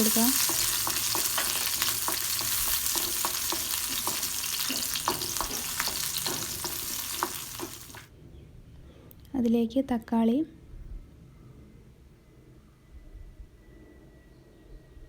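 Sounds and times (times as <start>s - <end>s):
chillies sizzling in hot oil: 0.0s - 8.1s
spatula clicking against pan: 0.3s - 8.0s.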